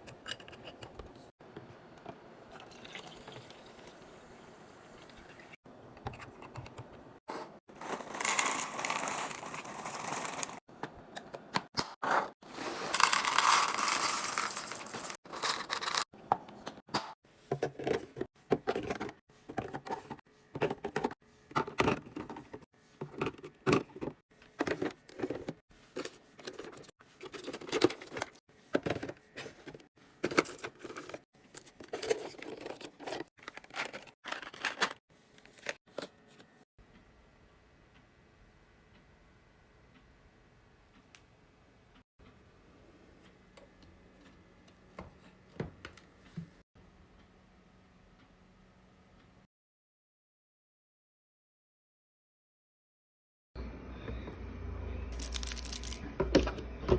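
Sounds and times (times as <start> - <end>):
packaging crinkling and tearing: 7.8 - 10.6, 33.4 - 35.7, 55.2 - 56.0.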